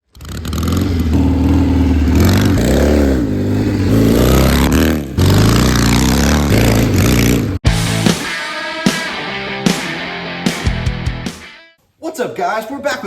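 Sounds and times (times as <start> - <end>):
motorcycle engine revving: 0.0 - 7.6.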